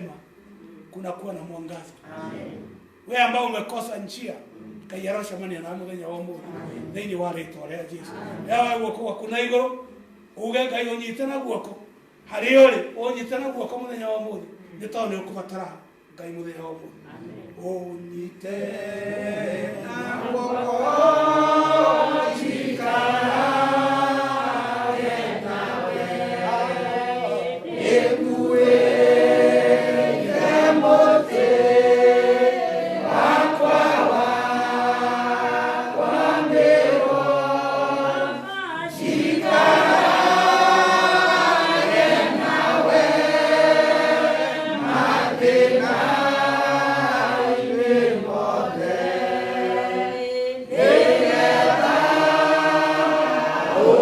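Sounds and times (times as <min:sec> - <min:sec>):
congregation singing: 0:17.1 - 0:54.0.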